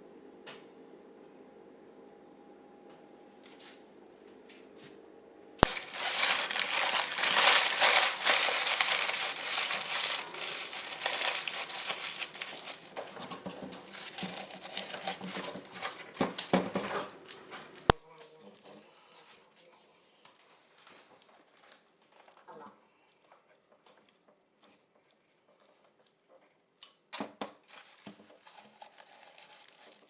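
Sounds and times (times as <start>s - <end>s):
material crumpling and crinkling: 5.6s - 18.0s, 27.7s - 30.0s.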